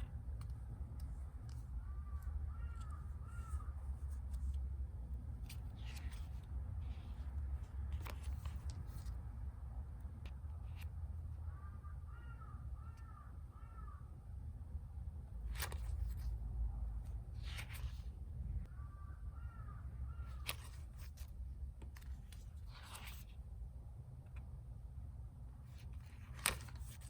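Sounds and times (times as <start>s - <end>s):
pages being flipped: 0.0s - 9.2s, 15.5s - 16.4s, 17.3s - 18.2s, 20.3s - 23.4s, 25.7s - 27.0s
crow cawing: 1.8s - 3.8s, 11.4s - 14.1s, 18.7s - 20.4s.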